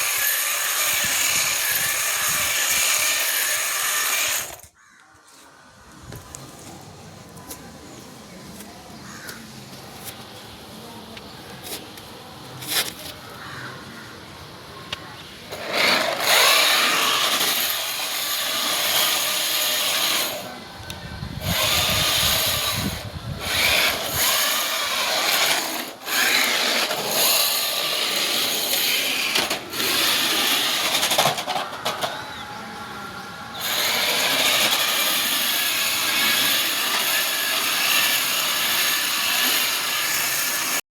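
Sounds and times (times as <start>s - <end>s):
remote control car motor whining: 0.0s - 4.7s, 15.5s - 20.5s, 21.4s - 32.6s, 33.5s - 40.8s.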